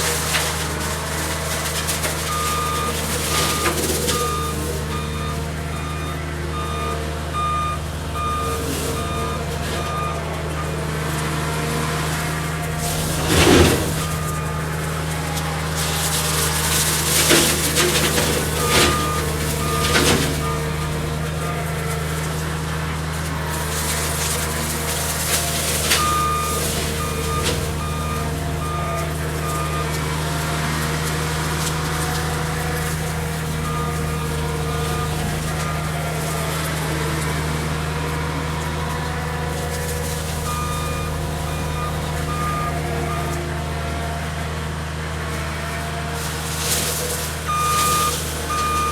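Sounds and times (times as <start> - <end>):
loader diesel engine running: 0.0 - 48.9
backup alarm beeping: 2.2 - 10.8, 25.9 - 30.1, 40.4 - 43.3, 47.5 - 48.9.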